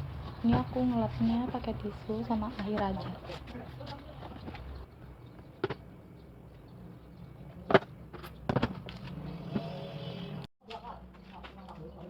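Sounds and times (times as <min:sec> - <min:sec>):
objects knocking on furniture: 0:07.7 - 0:08.9.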